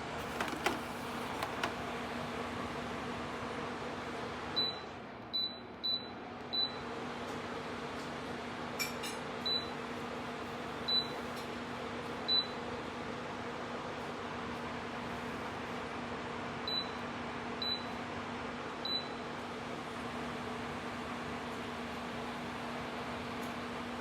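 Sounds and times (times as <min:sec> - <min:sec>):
tower fan humming: 0:00.0 - 0:04.6.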